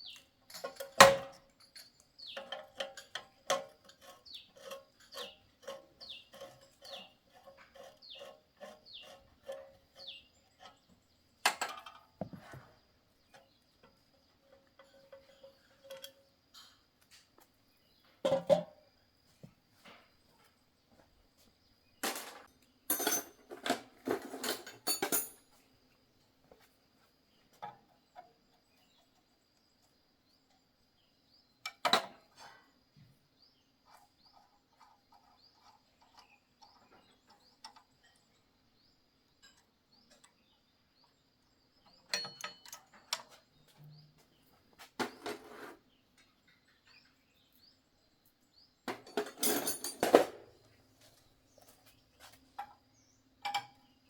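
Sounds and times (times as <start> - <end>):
metal tools clinking: 0.1 - 7.1, 22.0 - 25.6, 42.1 - 43.3, 48.9 - 50.4.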